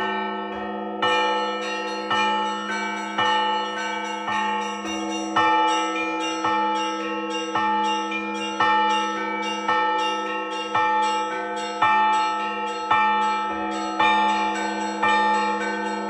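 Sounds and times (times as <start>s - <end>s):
church bell strikes: 0.0s - 16.0s
ringing hum of large bells: 0.0s - 16.0s
small bells ringing quickly: 7.3s - 16.0s.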